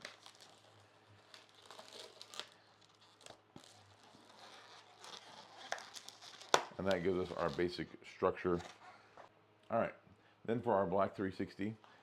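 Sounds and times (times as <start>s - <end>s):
balloons rubbing and crinkling: 0.0s - 9.2s.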